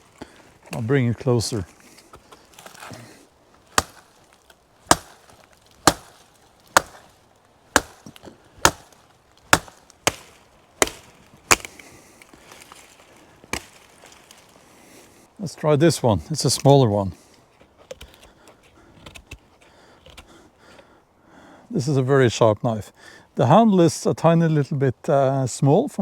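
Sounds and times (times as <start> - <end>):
knife chopping into wood: 3.7 - 4.1, 4.9 - 7.1, 7.7 - 11.8, 13.5 - 13.9.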